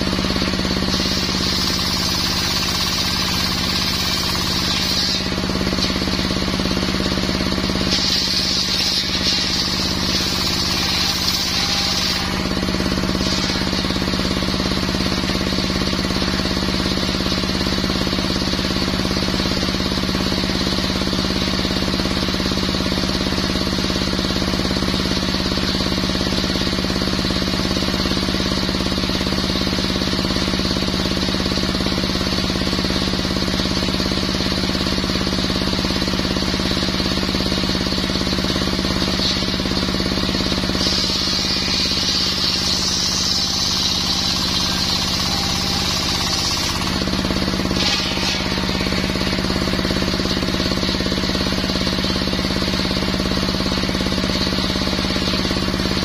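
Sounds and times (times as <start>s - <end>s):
saw blade cutting wood: 0.0s - 16.3s, 38.8s - 51.3s
brush cutter engine running: 0.0s - 56.0s.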